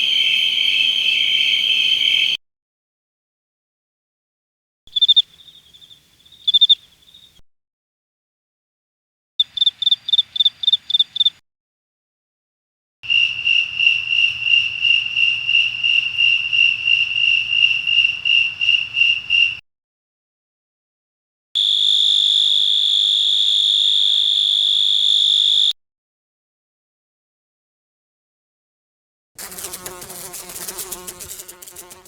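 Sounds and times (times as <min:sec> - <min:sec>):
insect high pulsed chirping: 0:00.0 - 0:02.4, 0:04.9 - 0:07.4
insect steady high trill: 0:00.0 - 0:02.4, 0:04.9 - 0:07.4, 0:21.6 - 0:25.8.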